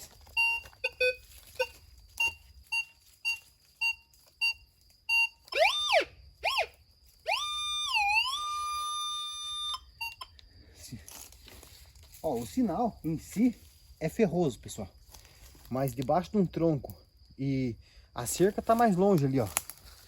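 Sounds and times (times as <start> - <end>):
metal detector beeping: 0.0 - 10.4
metal detector steady tone: 0.0 - 10.4
metal detector warbling tones: 7.3 - 10.3.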